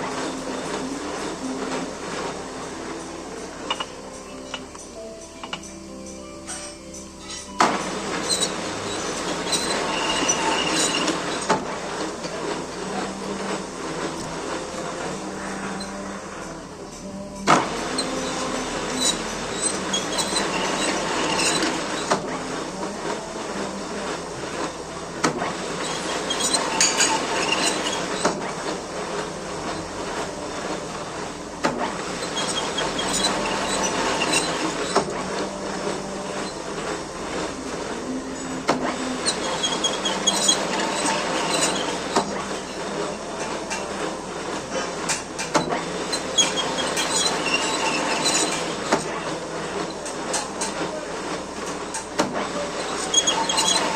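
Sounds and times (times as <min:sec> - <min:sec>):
metal lathe humming: 0:00.0 - 0:53.9
metallic screeching from cutting: 0:07.2 - 0:11.7, 0:17.8 - 0:22.4, 0:25.8 - 0:28.6, 0:32.0 - 0:36.6, 0:38.7 - 0:43.9, 0:44.7 - 0:50.9, 0:52.8 - 0:53.9.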